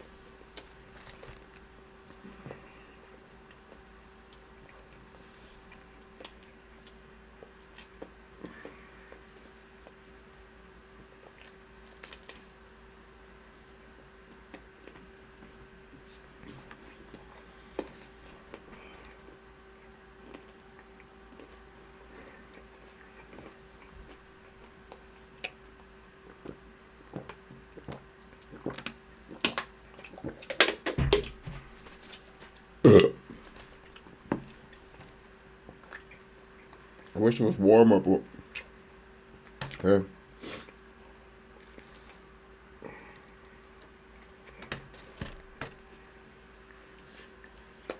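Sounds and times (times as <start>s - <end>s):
person chewing food: 20.1s - 30.4s, 32.0s - 37.1s, 45.8s - 47.9s
person burping: 32.9s - 33.3s.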